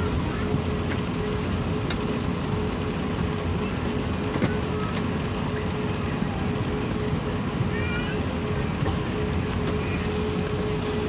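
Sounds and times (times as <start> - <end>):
airplane cabin rumble and hum: 0.0 - 11.0.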